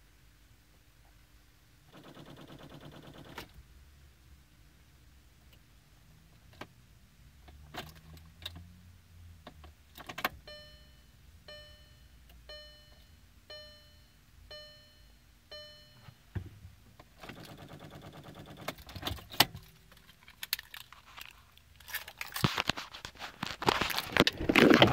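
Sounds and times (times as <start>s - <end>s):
dashboard warning chime: 10.4s - 16.3s.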